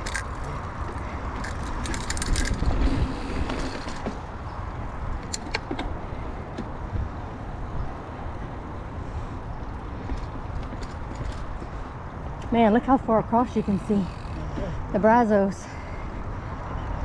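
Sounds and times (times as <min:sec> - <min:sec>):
bike clicks and rattles: 0:00.0 - 0:06.8, 0:09.6 - 0:14.8
wind and tyre noise: 0:00.0 - 0:17.0.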